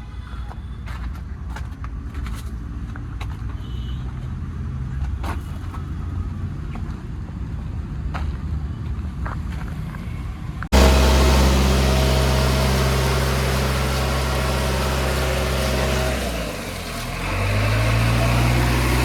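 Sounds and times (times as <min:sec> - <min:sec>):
heavy diesel engine running: 0:10.7 - 0:19.0.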